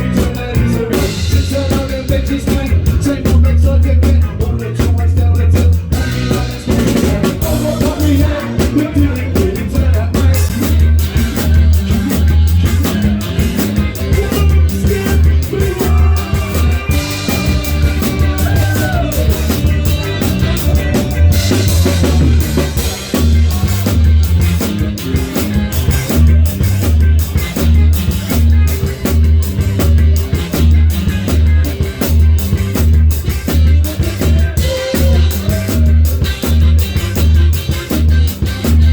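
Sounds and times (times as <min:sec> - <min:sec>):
person singing: 0:00.0 - 0:24.3, 0:33.5 - 0:36.7
drum kit: 0:00.0 - 0:38.9
heavy bass line: 0:00.0 - 0:38.9
live band playing: 0:00.0 - 0:38.9.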